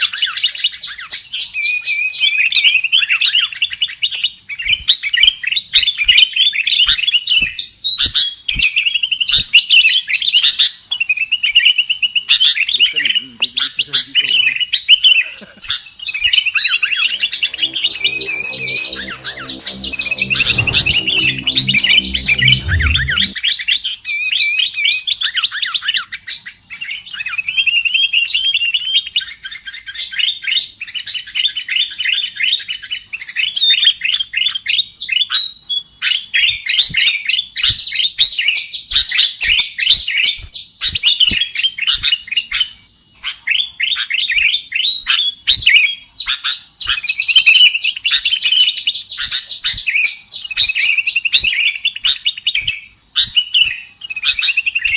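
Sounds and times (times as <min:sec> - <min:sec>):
low rumble: 0:16.7 - 0:23.4
bird chirps and whistles: 0:50.6 - 0:54.9.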